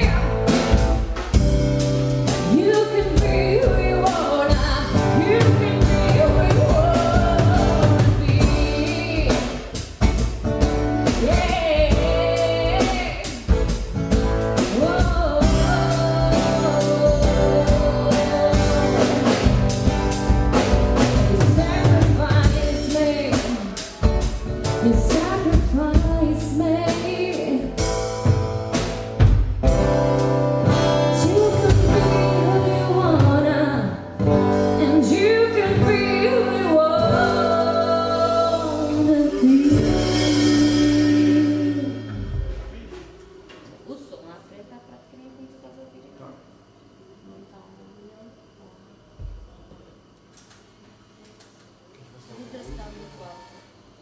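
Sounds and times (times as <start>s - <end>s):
band playing a song: 0.0s - 43.5s
lead singer singing: 2.4s - 9.8s, 14.6s - 19.7s, 34.8s - 42.3s.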